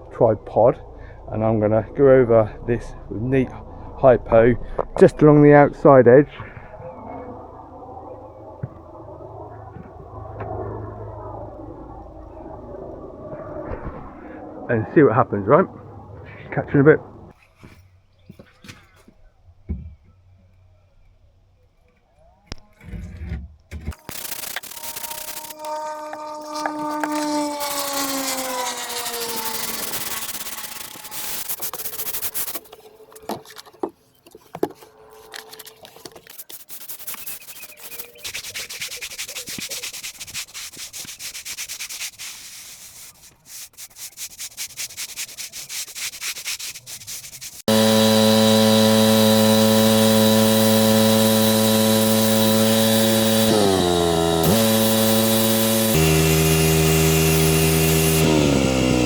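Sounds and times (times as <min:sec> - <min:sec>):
pressure washer engine: 0:24.0 - 0:32.8, 0:47.6 - 0:59.0
brush scrubbing stone: 0:24.1 - 0:33.8, 0:34.7 - 0:58.2.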